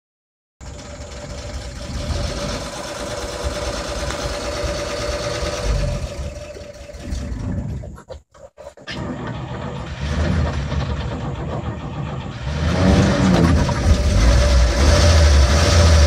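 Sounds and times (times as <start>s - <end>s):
truck engine idling: 0.6s - 7.9s, 9.0s - 12.8s.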